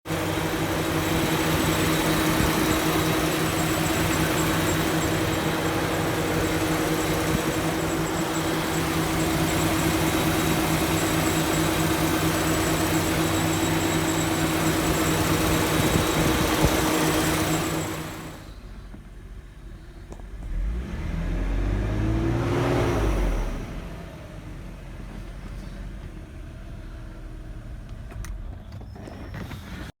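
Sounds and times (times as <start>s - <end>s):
car engine humming: 0.0s - 28.6s
engine surge: 0.1s - 18.7s.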